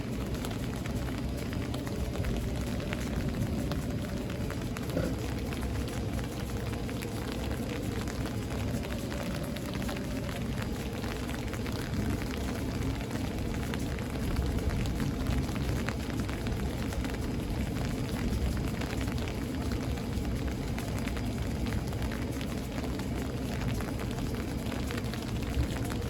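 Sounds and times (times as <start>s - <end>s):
low thunder rumble: 0.0s - 22.0s
raindrops ticking: 0.0s - 26.0s.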